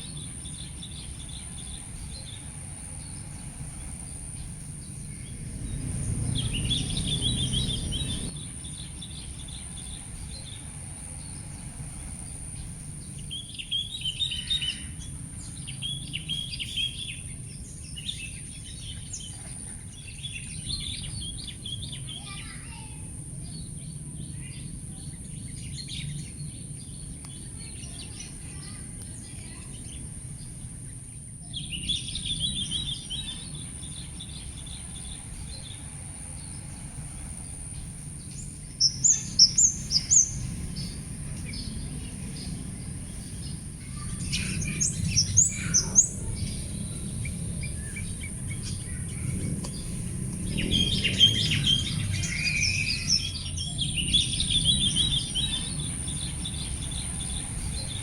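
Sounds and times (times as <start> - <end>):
birds chirping: 0.0 - 58.0
low background rumble: 0.0 - 58.0.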